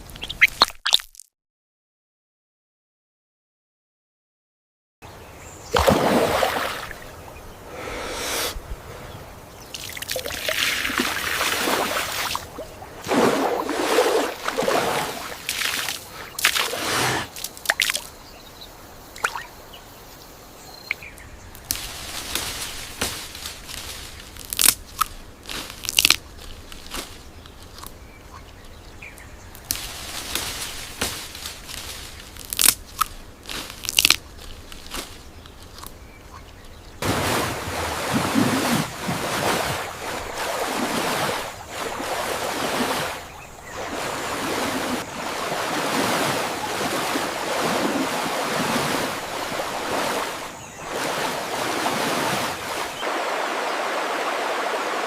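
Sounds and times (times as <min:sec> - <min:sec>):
crunching and rustling: 0:21.6 - 0:28.0, 0:29.5 - 0:36.0.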